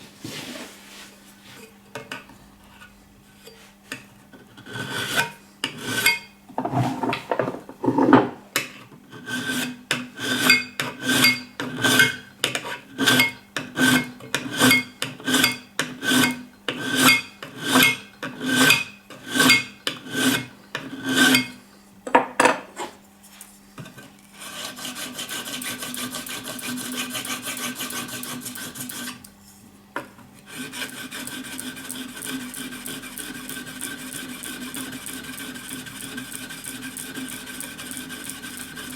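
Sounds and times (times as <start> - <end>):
continuous rubbing noise: 0.0 - 1.6, 6.6 - 8.2
blade being filed: 4.6 - 6.8, 9.1 - 21.6, 24.4 - 29.3, 30.5 - 38.9.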